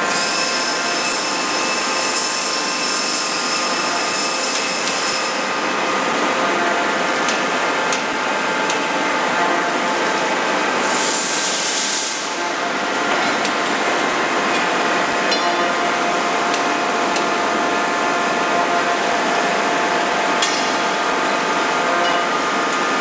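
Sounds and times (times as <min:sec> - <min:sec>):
machinery hums: 0:00.0 - 0:23.0
air hiss: 0:10.8 - 0:12.3.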